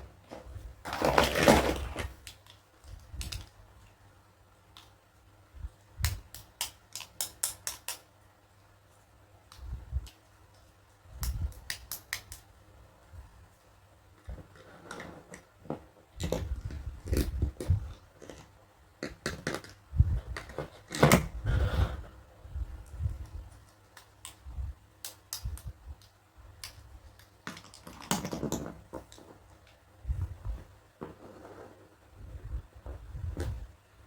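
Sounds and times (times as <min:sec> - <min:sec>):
packaging rustling: 0:00.2 - 0:02.3
plastic toy pieces clicking: 0:06.1 - 0:08.1.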